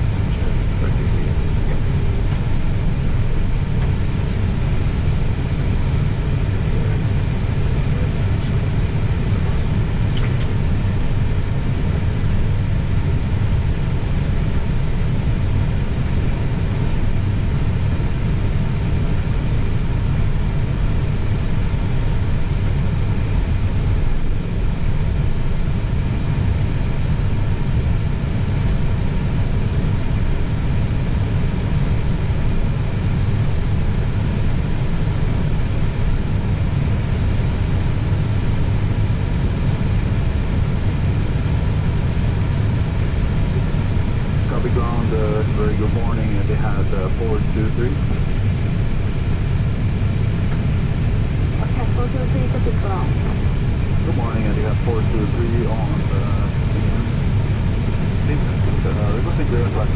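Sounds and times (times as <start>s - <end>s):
aircraft cockpit low rumble: 0.0s - 59.9s
faint steady whining tones: 0.0s - 59.9s.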